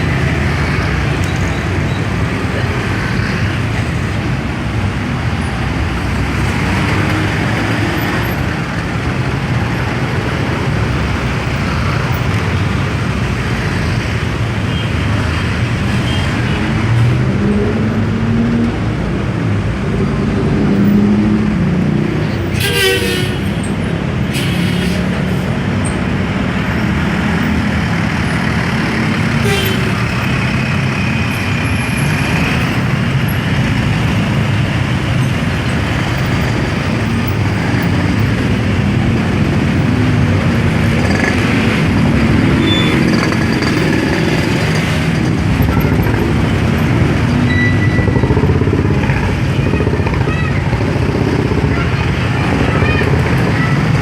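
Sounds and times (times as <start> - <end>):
car and motorcycle engines: 0.0 - 54.0
short sharp hisses: 24.3 - 25.1.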